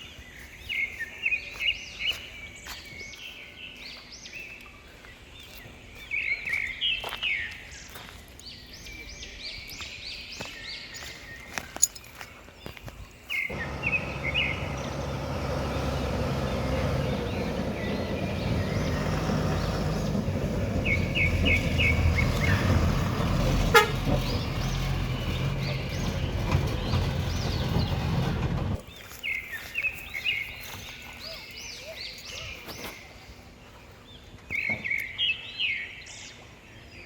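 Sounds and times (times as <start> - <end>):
diesel machinery engine running: 13.5 - 28.9.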